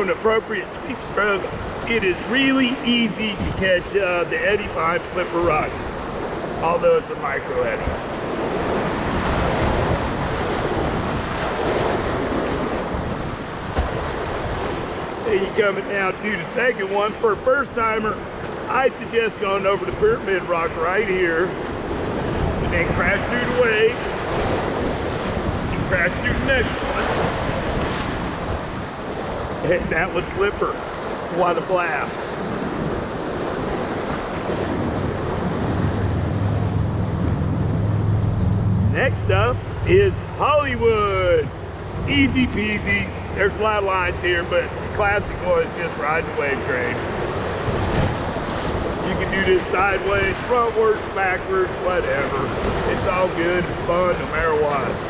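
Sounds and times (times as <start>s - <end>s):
whitewater rushing: 0.0s - 55.0s
wind on microphone: 0.7s - 6.6s, 7.6s - 15.3s, 19.8s - 31.3s, 32.2s - 54.2s
low steady drone: 34.8s - 45.2s.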